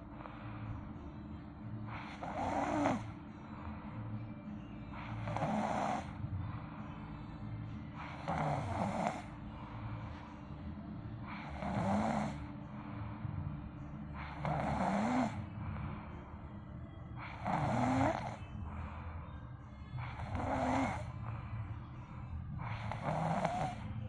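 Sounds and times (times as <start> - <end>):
child snoring: 1.9 - 3.2, 4.9 - 6.3, 8.0 - 9.4, 11.2 - 12.5, 14.2 - 15.7, 17.2 - 18.4, 20.0 - 21.4, 22.6 - 24.0.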